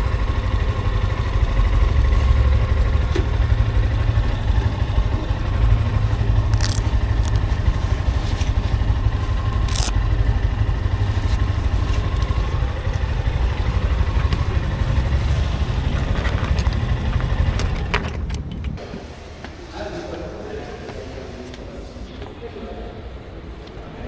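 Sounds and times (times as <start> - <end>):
motorcycle engine running: 0.0 - 18.8
road and wind noise: 0.0 - 19.6.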